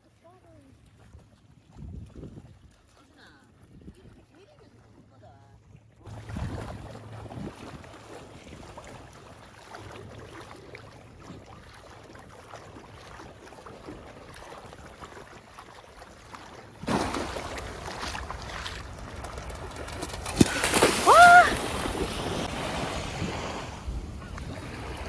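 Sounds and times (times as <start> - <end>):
water splashing and sloshing: 0.0 - 25.0
rush of water: 20.2 - 25.0.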